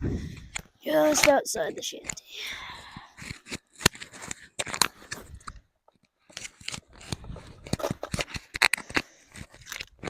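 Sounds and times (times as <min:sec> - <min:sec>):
microphone handling noise: 0:00.0 - 0:00.6.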